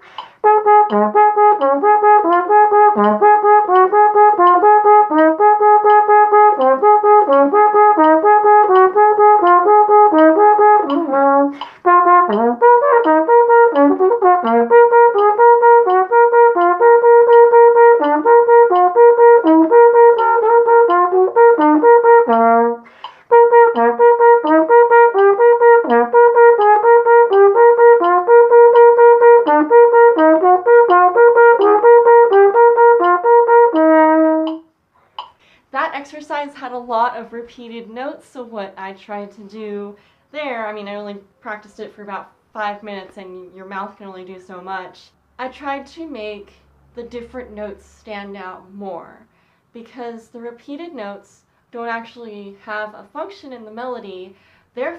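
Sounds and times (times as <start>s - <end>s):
flugelhorn playing repeated notes: 0.0s - 34.8s.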